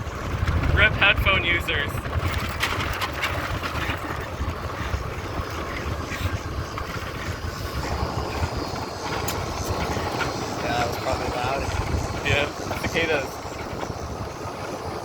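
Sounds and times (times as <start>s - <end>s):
golf cart rolling on gravel: 0.0s - 15.0s
cicadas buzzing: 4.2s - 15.0s.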